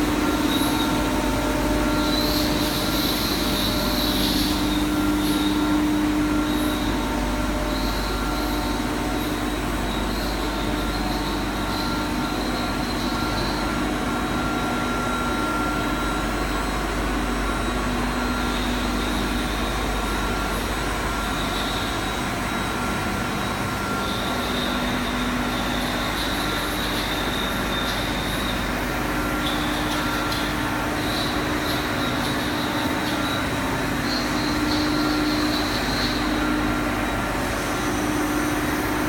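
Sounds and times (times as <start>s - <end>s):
grinding machine hiss: 0.0s - 39.0s
steady machine tones: 0.0s - 39.0s.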